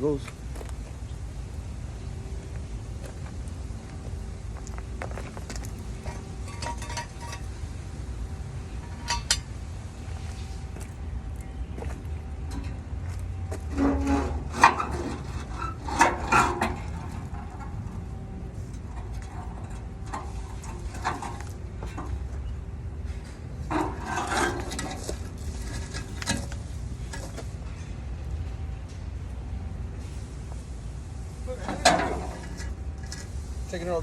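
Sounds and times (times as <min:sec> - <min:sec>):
metal tools clinking and clanking: 0:06.0 - 0:07.5, 0:08.8 - 0:09.5, 0:23.7 - 0:27.5.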